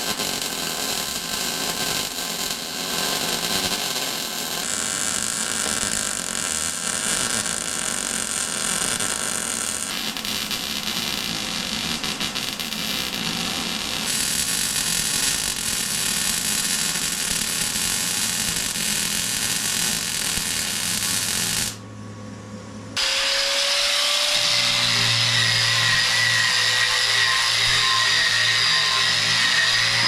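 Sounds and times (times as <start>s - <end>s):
power tool whining on steel: 23.0s - 30.0s.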